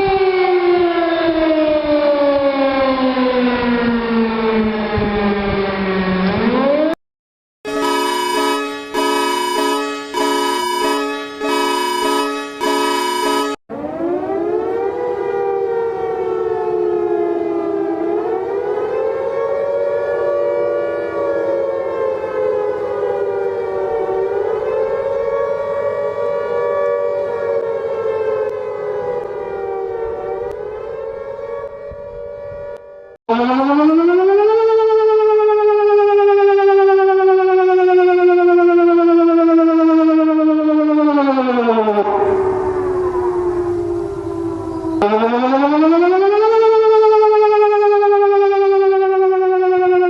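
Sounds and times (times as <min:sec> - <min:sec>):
air-raid siren wailing: 0:00.0 - 0:07.0, 0:07.7 - 0:50.0.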